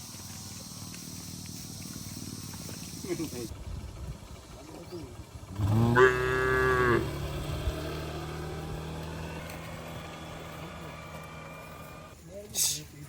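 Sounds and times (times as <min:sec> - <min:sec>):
low engine hum: 0:00.0 - 0:12.2
cow mooing: 0:05.6 - 0:07.2.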